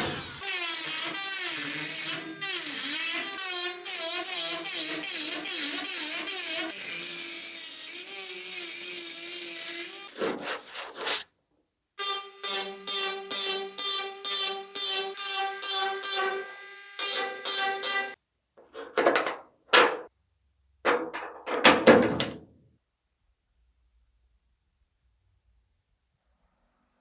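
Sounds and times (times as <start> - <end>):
power tool whining: 0.0 - 10.2, 12.0 - 18.2.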